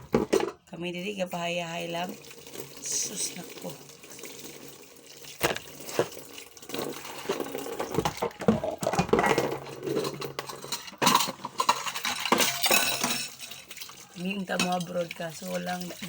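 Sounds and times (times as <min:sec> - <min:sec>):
dishes knocking and clattering: 0:00.0 - 0:00.7, 0:05.4 - 0:13.9
tap water running into sink: 0:01.5 - 0:09.5, 0:12.5 - 0:16.0.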